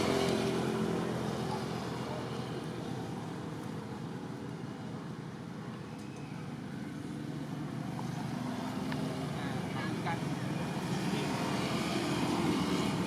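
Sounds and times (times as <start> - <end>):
motor vehicle engine hum: 0.0 - 13.0.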